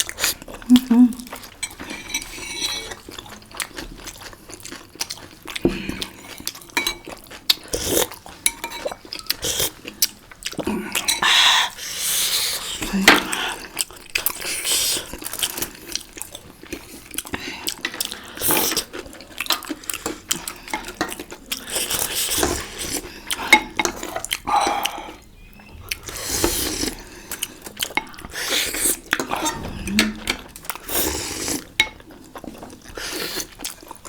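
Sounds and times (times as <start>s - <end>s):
chewing and biting: 2.8s - 11.1s
spoon and plate clinks: 8.5s - 9.4s.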